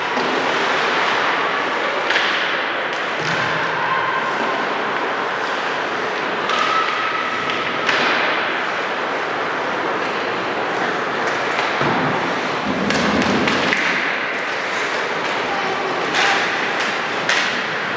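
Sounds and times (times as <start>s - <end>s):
ice game noise: 4.2s - 17.9s.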